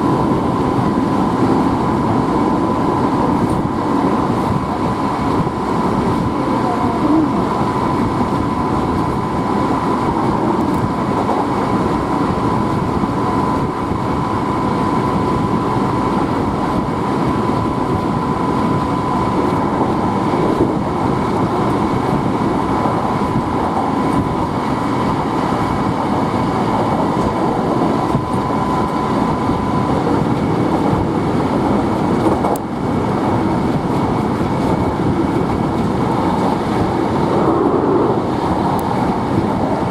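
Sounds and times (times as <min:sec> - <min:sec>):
electric train running: 0:00.0 - 0:39.9
steady high tone: 0:06.3 - 0:07.9.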